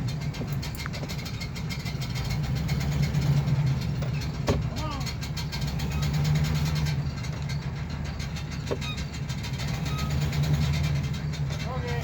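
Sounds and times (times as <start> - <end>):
van engine idling: 0.0 - 12.0.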